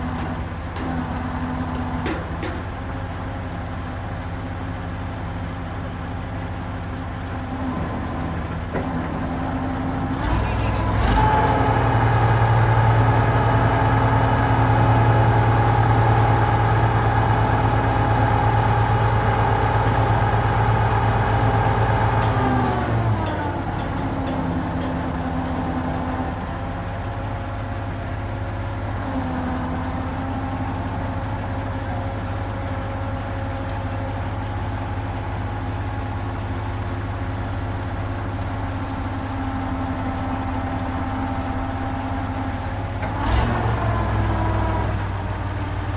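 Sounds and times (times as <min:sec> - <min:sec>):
diesel engine running: 0:00.0 - 0:45.9.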